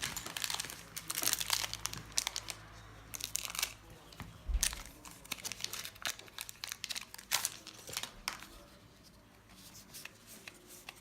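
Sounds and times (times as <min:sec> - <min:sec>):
plastic wrappers crinkling: 0:00.0 - 0:08.7
cards being handled: 0:03.2 - 0:11.0.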